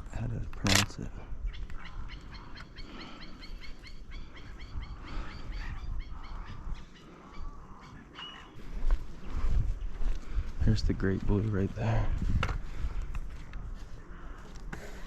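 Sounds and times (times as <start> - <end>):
bird chirps: 1.4 - 8.6.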